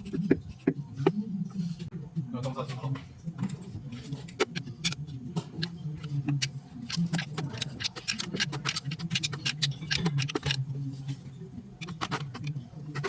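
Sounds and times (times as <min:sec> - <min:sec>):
hand tools clicking and tapping: 0:04.3 - 0:10.7, 0:11.8 - 0:13.0.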